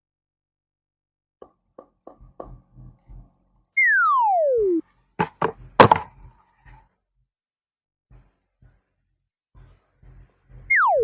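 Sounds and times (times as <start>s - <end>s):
whistle-like tone sliding down: 3.8s - 4.8s, 10.6s - 11.0s
sharp knocks: 5.2s - 6.1s.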